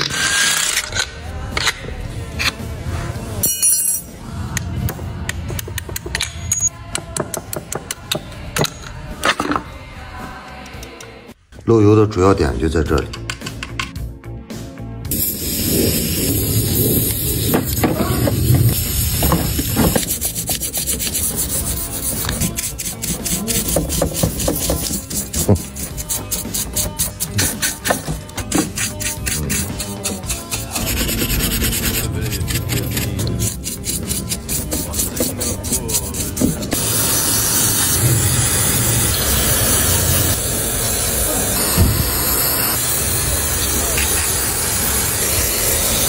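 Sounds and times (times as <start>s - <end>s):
loud spraying hiss: 15.1s - 20.4s, 36.7s - 46.0s
rubbing and scraping by hand: 15.5s - 36.8s.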